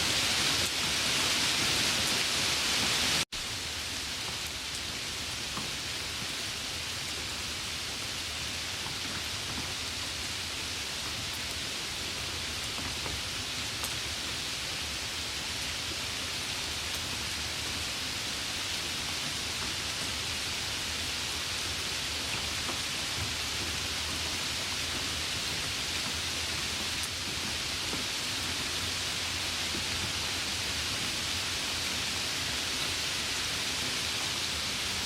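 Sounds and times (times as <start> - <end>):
light rain hissing: 0.0 - 35.0.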